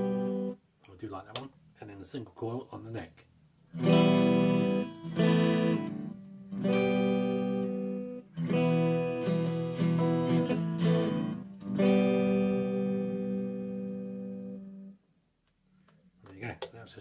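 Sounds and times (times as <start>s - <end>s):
clean electric guitar chords: 0.0s - 0.6s, 3.8s - 15.0s.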